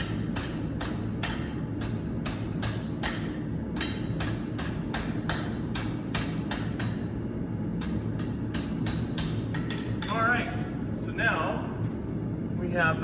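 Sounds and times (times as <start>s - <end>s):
hammer striking hot steel: 0.0s - 7.2s, 7.8s - 10.2s
gas forge roaring: 0.0s - 13.0s.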